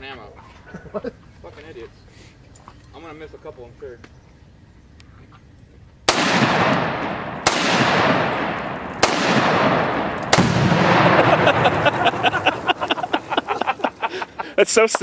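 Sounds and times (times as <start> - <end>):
loud gunshots: 6.1 - 12.8
explosion rolling boom: 6.2 - 12.8.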